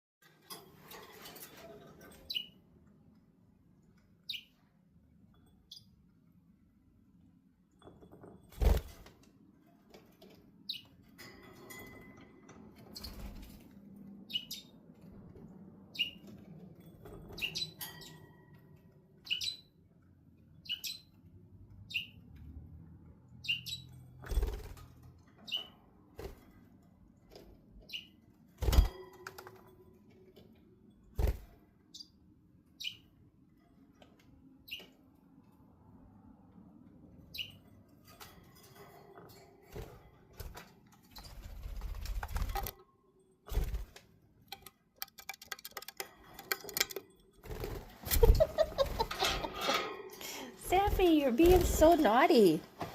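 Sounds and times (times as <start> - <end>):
wings fluttering: 41.2 - 42.8, 46.5 - 49.9.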